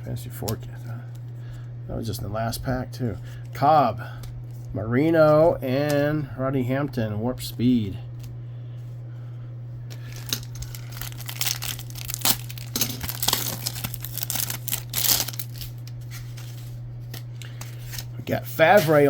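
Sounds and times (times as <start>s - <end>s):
steady low hum: 0.0s - 19.0s
wrapper torn open and crinkled: 10.0s - 18.1s.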